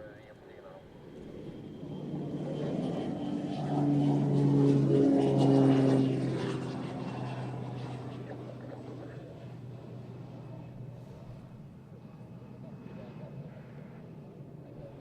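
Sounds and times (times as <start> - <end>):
aircraft engine drone: 0.0 - 15.0.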